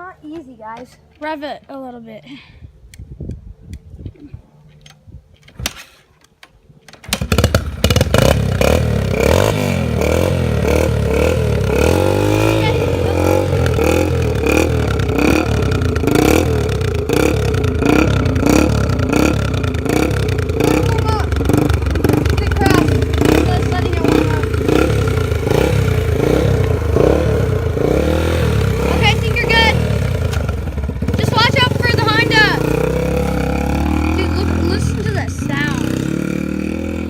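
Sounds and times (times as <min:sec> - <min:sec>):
dirt bike engine revving: 0:07.1 - 0:37.0
sharp clicks: 0:30.2 - 0:30.6.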